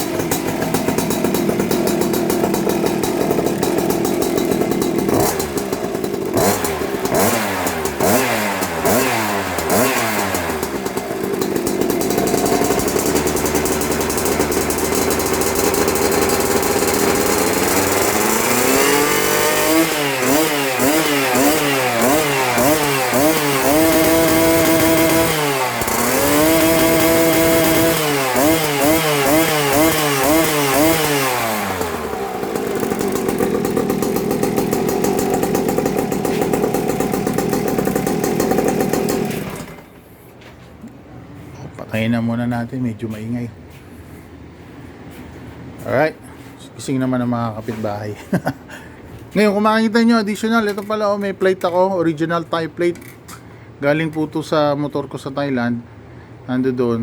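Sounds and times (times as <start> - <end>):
scooter engine revving: 0.0 - 40.1.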